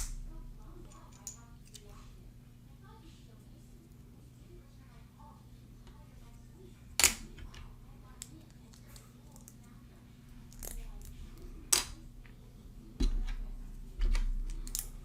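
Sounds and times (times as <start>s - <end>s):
plastic pieces clicking together: 14.0s - 15.0s.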